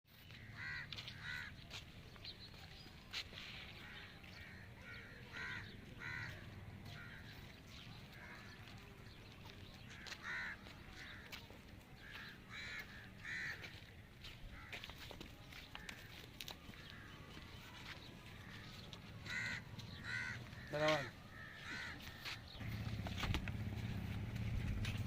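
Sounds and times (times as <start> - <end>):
birds calling: 0.1 - 25.0
low steady rumble: 22.6 - 25.0.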